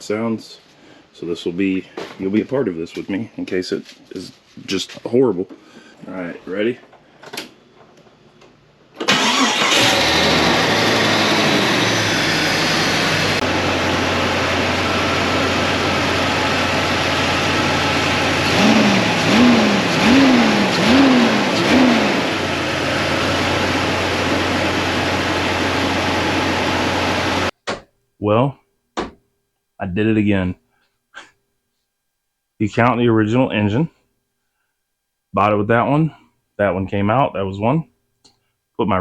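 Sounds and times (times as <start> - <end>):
car engine idling and revving: 9.1 - 27.5.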